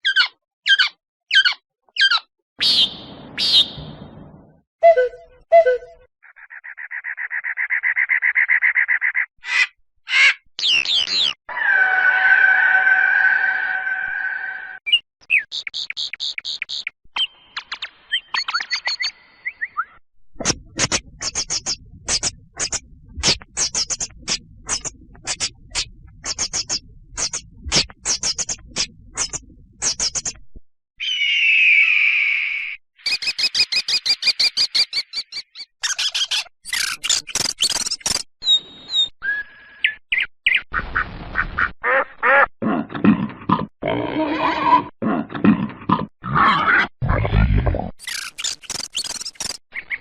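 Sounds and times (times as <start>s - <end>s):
fast rattling animal call: 48.0s - 49.9s.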